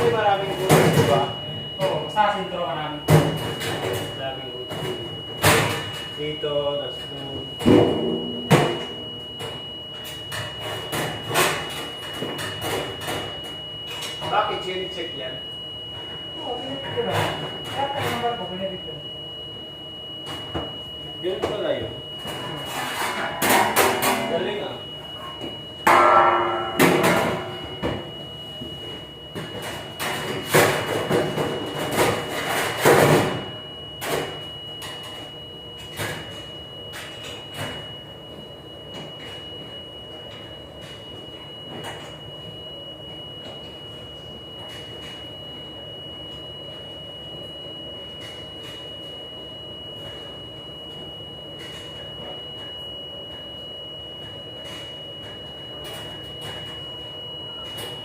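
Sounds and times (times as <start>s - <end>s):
dishwashing machine humming: 0.0s - 39.0s
high whine: 0.0s - 58.0s.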